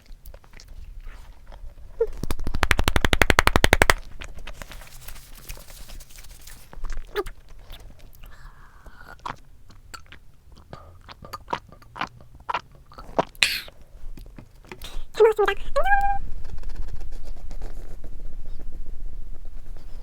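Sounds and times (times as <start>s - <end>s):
chewing and biting doughnuts: 0.0s - 2.4s, 4.0s - 15.1s
mouth clicks: 6.8s - 17.7s.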